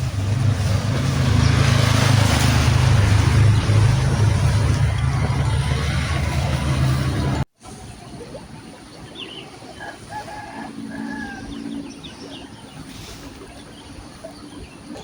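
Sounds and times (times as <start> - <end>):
rooster crowing: 10.1 - 11.6.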